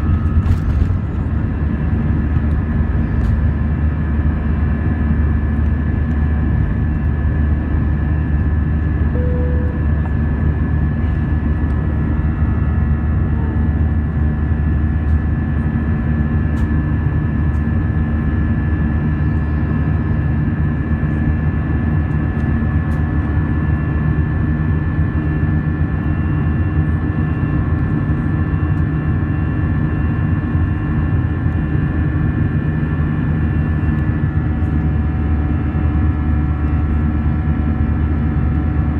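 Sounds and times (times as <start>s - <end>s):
airplane cabin rumble: 0.0s - 23.6s.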